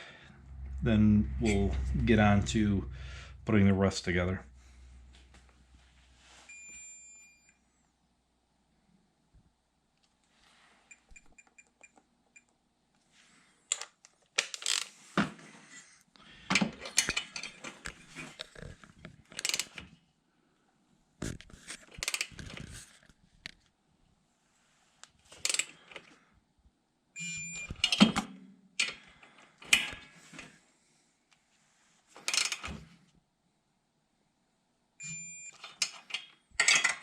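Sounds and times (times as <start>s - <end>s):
short electronic beeps: 35.0s - 35.6s
metal tools clinking: 35.8s - 37.0s.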